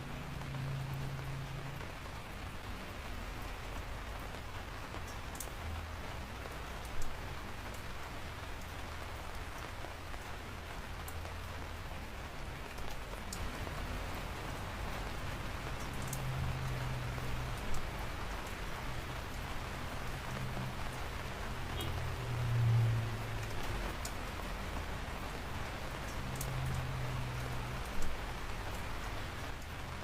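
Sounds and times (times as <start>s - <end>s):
rain falling: 0.0s - 30.0s
raindrops ticking: 0.0s - 30.0s.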